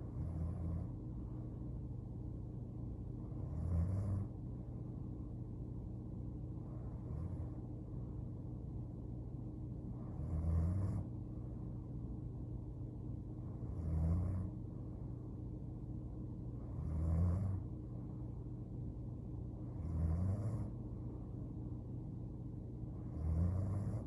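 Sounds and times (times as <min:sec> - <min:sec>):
steady low hum: 0:00.0 - 0:24.0
woman snoring: 0:03.4 - 0:04.3, 0:10.2 - 0:11.0, 0:13.7 - 0:14.5, 0:16.8 - 0:17.6, 0:19.8 - 0:20.7, 0:23.1 - 0:24.0.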